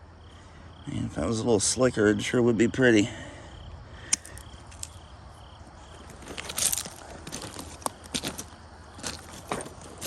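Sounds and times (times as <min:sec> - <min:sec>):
faint insect chirping: 0:00.0 - 0:10.0
footsteps crunching on gravel: 0:05.6 - 0:10.0.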